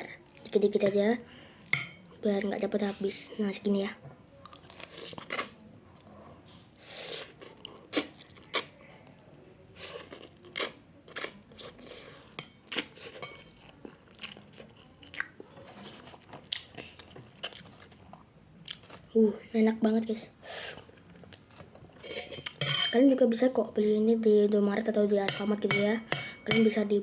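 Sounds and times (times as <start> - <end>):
person chewing noodles: 4.4 - 5.6, 7.0 - 8.8, 9.8 - 19.0.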